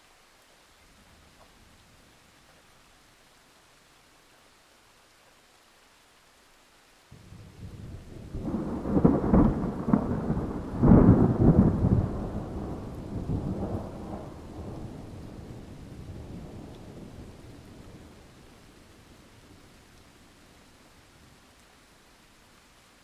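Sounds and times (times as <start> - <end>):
rain hissing: 0.0 - 23.0
thunder cracking and rolling: 7.2 - 18.2.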